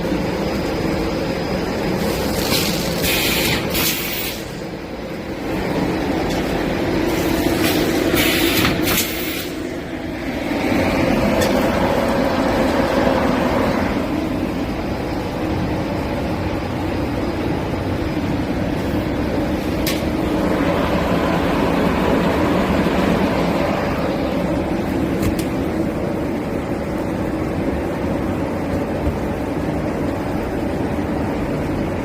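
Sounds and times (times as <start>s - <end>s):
packaging machine humming: 0.0s - 14.5s.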